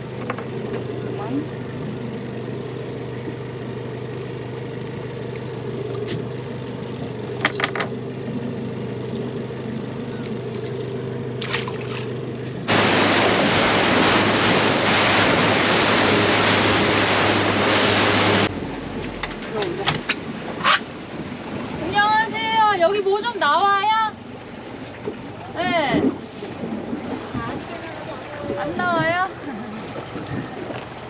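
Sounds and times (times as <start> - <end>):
boat engine humming: 0.0 - 31.0
rushing wind and water: 11.4 - 31.0.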